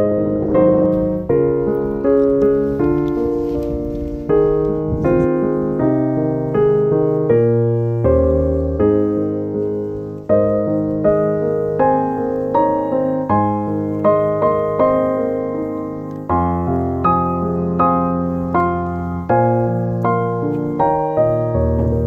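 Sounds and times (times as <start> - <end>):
gentle piano music: 0.0 - 22.0.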